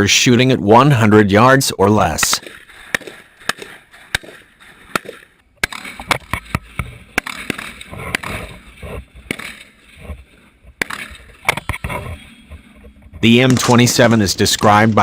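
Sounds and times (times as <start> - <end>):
rifle shots: 2.3 - 8.5, 13.3 - 15.0.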